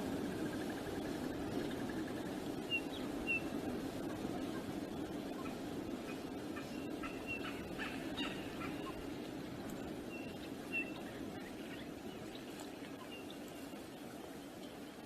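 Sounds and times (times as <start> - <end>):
wind noise on microphone: 0.0 - 15.0
bird calls and chirps: 0.3 - 15.0
whistled bird notes: 2.7 - 3.6.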